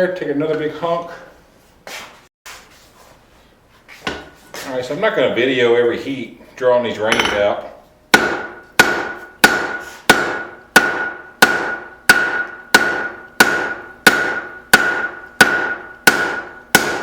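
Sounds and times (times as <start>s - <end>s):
hammer blows on anvil: 7.0s - 17.0s.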